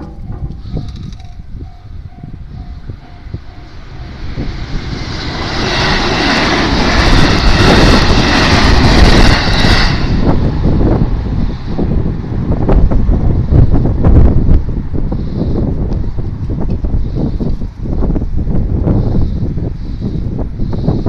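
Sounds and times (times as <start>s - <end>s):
crossing warning bell: 0.0s - 5.0s
train wheels rumbling on rails: 0.0s - 21.0s.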